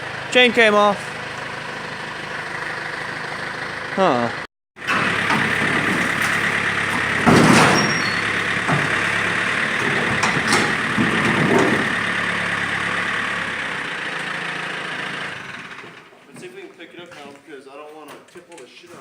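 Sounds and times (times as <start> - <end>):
vehicle engine running: 0.0 - 16.2
loud metal clank: 4.8 - 13.6.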